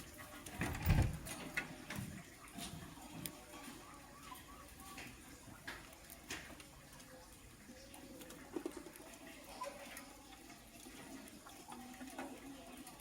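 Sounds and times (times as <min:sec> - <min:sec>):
bird scratching and tapping in cage: 0:08.0 - 0:09.2.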